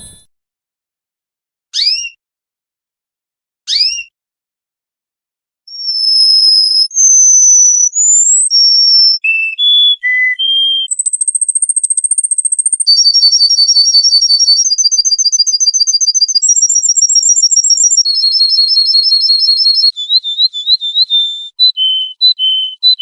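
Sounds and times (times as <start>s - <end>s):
songbird singing: 10.0s - 23.0s.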